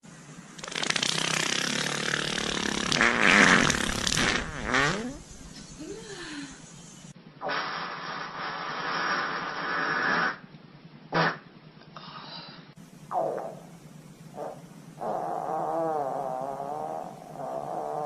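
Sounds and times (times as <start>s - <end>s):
steady noise: 0.0s - 18.0s
person farting: 0.6s - 5.2s, 7.4s - 10.4s, 11.1s - 11.5s, 13.1s - 13.6s, 14.4s - 18.0s.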